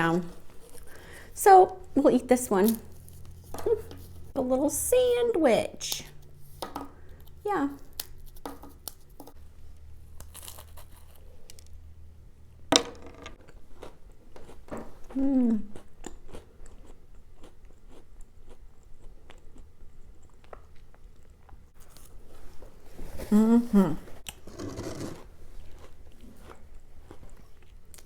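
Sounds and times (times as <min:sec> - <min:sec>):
cracker crunching while chewing: 0:00.3 - 0:01.4, 0:02.6 - 0:04.3, 0:07.0 - 0:11.8, 0:15.7 - 0:22.2, 0:24.2 - 0:28.0
person humming: 0:15.2 - 0:15.7, 0:23.3 - 0:24.2.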